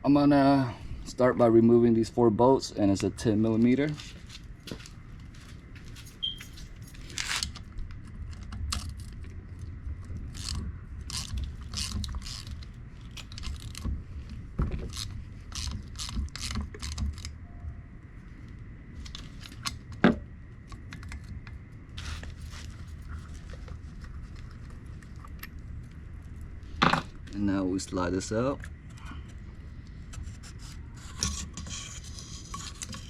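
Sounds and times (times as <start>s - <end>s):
ratchet wrench clicking: 10.3s - 12.6s, 14.9s - 17.3s.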